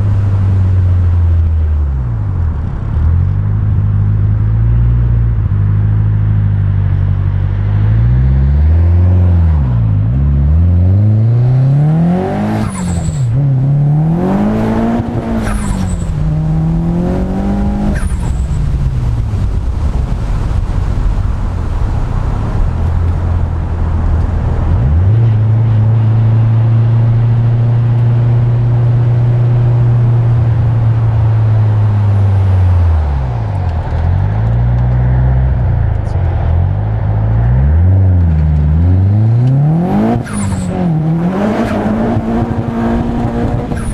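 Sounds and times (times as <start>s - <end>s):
car engine revving: 7.5s - 21.0s, 21.7s - 43.9s.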